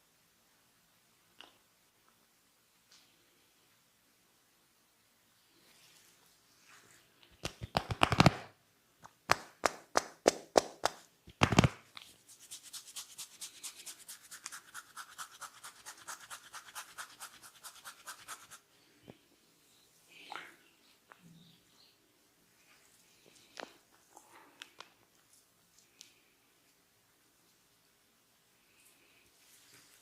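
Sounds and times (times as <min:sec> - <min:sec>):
hair crackling snaps: 0:07.4 - 0:12.1
rapid scratching of scalp: 0:11.6 - 0:18.6.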